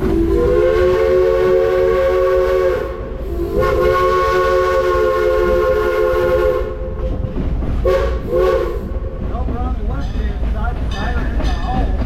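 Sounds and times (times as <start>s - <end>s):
steam train whistle blowing: 0.0s - 7.0s, 7.8s - 9.1s.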